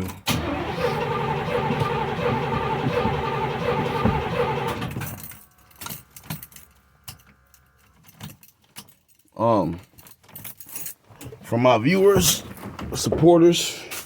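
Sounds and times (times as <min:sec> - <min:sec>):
car engine cranking: 0:00.2 - 0:08.2
keys jangling: 0:04.9 - 0:11.3.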